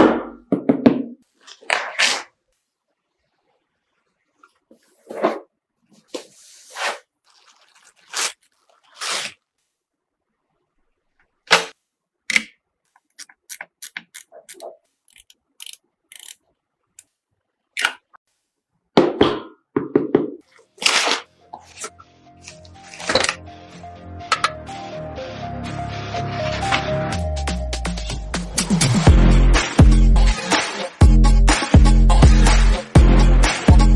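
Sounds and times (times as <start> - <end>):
computer parts clicking and knocking: 12.3 - 16.4.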